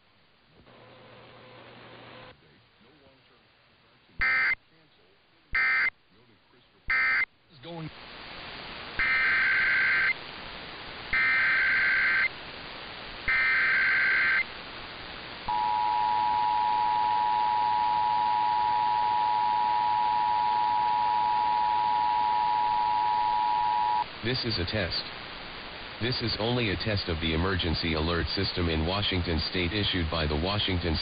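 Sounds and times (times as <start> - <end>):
screeching digital data tones: 4.2 - 4.6, 9.0 - 10.2, 11.2 - 12.3, 13.3 - 14.5
two-tone attention signal: 15.5 - 24.0.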